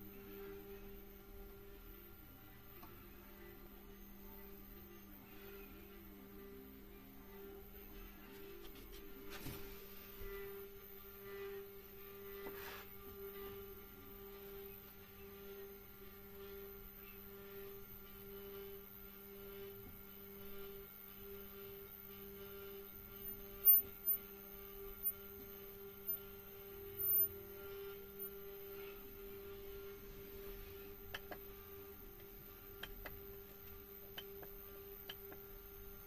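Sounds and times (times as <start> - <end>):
stepper motors whining: 27.0 - 27.3.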